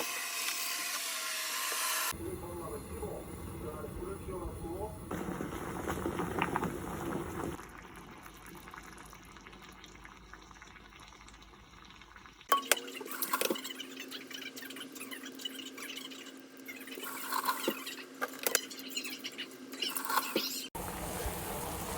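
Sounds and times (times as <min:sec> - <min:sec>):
liquid sounds: 0:05.0 - 0:21.9.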